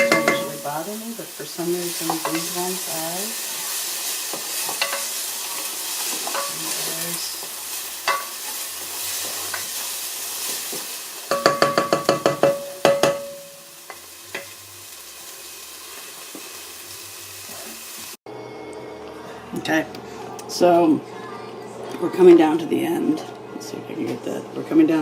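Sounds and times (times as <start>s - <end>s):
onions sizzling in pan: 0.0s - 18.2s.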